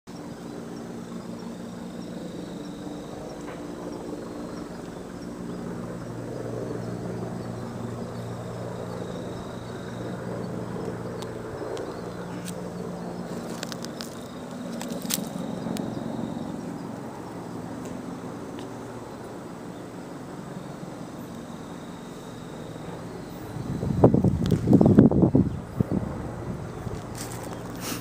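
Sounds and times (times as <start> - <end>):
engine hum: 0.1 - 28.0
faint high insect trill: 0.1 - 28.0.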